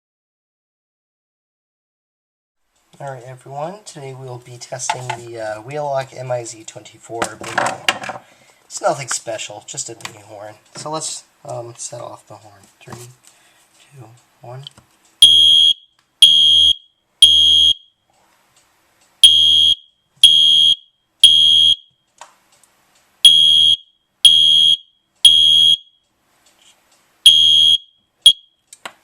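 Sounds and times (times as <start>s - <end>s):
fire alarm horn blasts: 15.2s - 18.0s, 19.2s - 22.0s, 23.2s - 26.0s, 27.3s - 28.6s.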